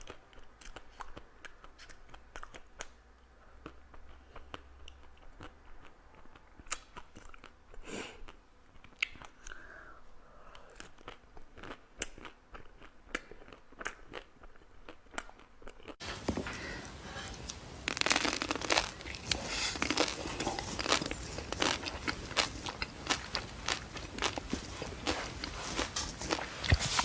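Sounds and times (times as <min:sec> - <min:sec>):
chewing with mouth clicks: 0:00.0 - 0:09.6, 0:10.5 - 0:16.2, 0:17.3 - 0:27.0
crunching bites: 0:17.4 - 0:27.0.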